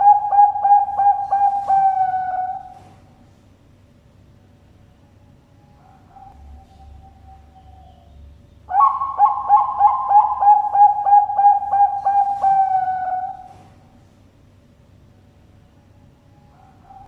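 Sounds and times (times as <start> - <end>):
dove cooing: 0.0 - 3.2, 8.7 - 13.9.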